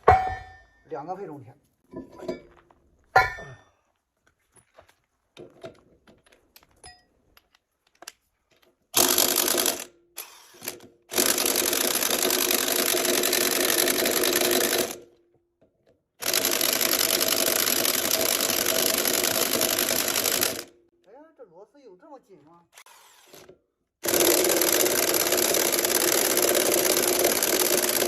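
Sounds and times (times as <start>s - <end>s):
impact wrench hammering: 0.0s - 0.8s, 16.2s - 20.7s, 24.0s - 28.0s.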